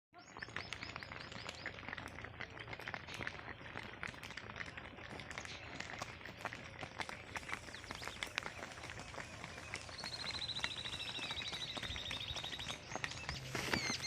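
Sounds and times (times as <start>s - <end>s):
small birds chirping: 0.2s - 1.9s, 7.1s - 14.0s.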